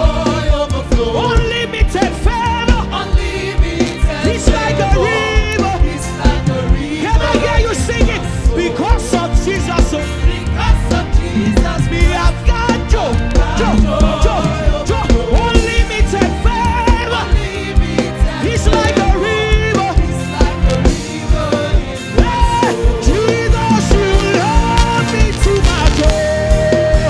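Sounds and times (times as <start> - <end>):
drum beat: 0.0 - 10.1, 11.3 - 27.0
live gospel band playing: 0.0 - 27.0
person singing: 0.0 - 27.0
pulsing bass: 0.0 - 27.0.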